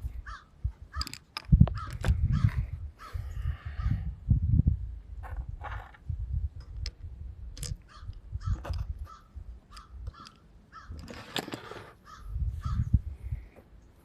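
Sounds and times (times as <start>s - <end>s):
bird calling: 0.2s - 4.0s, 7.8s - 11.1s, 11.7s - 13.0s.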